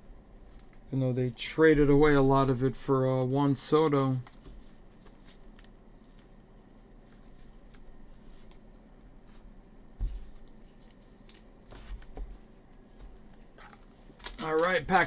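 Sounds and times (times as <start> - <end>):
trading cards clicking and rustling: 13.3 - 15.0.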